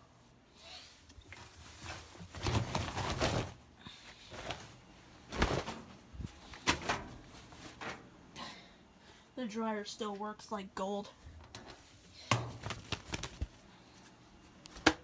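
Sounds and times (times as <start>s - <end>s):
cloth rustling: 1.4s - 8.1s, 11.9s - 13.7s.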